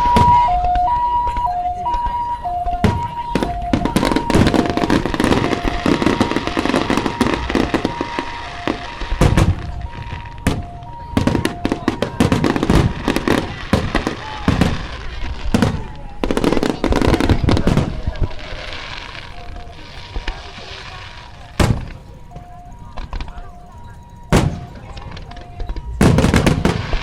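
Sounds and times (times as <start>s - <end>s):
fireworks banging: 0.0s - 27.0s
two-tone siren: 0.0s - 27.0s.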